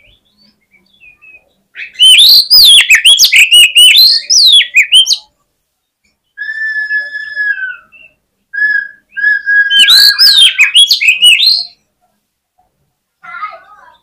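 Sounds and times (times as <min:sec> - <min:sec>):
bird singing whistles and phrases: 0:00.0 - 0:05.3, 0:06.3 - 0:11.8.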